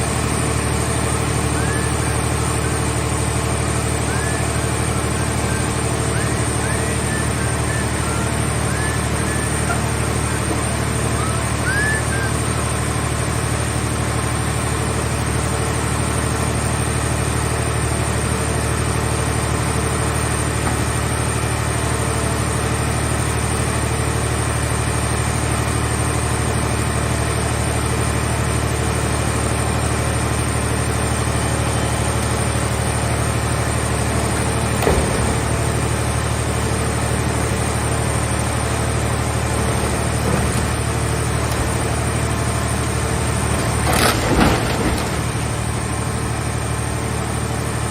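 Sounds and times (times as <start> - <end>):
baler power unit droning: 0.0 - 47.9.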